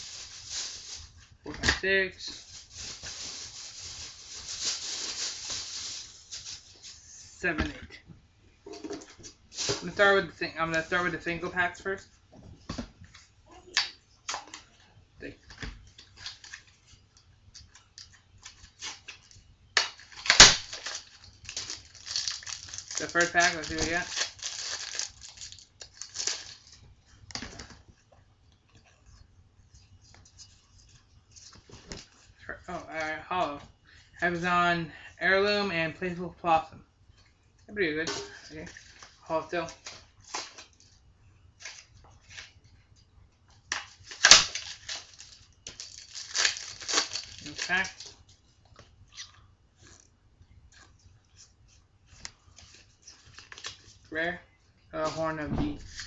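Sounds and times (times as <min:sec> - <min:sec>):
foil wrapper crinkling: 0:00.0 - 0:01.4, 0:02.2 - 0:07.1, 0:17.6 - 0:27.7, 0:43.7 - 0:48.4, 0:50.7 - 0:54.1
foil pack ripping open: 0:18.4 - 0:26.8, 0:43.7 - 0:48.1.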